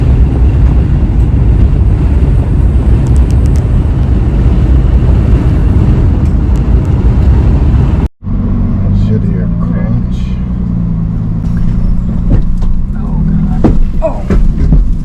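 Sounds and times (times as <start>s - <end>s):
wind buffeting microphone: 0.0s - 8.1s
vehicle low rumble: 0.0s - 15.0s.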